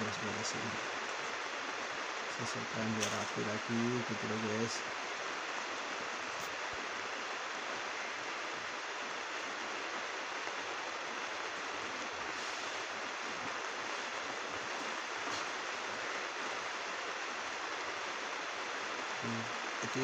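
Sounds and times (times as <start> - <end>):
heavy rain on a plastic roof: 0.0 - 20.0.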